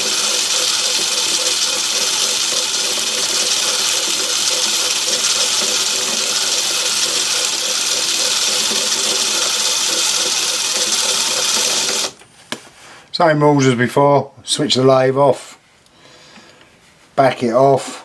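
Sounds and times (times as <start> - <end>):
lathe running with pulsing hiss: 0.0 - 12.2.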